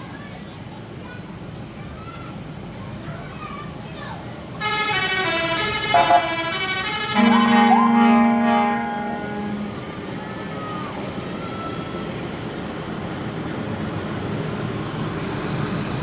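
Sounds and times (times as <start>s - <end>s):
road traffic noise: 0.0s - 16.0s
bus horn sounding loudly: 4.6s - 9.8s.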